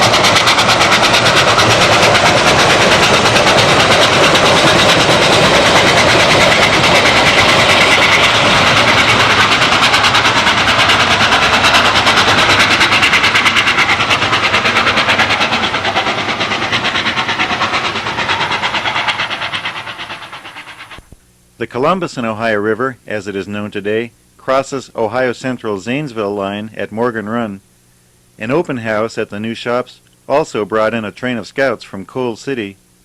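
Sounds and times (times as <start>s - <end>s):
steam train passing at speed: 0.0s - 21.1s.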